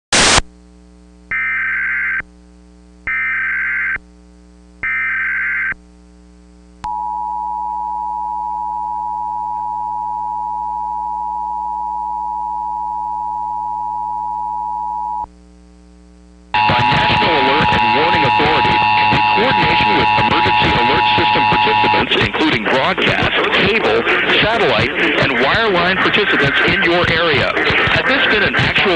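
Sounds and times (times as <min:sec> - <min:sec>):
faint steady hum: 0:00.2 - 0:28.4
two-tone attention signal: 0:16.6 - 0:22.2
digital data tone bursts: 0:16.6 - 0:23.0.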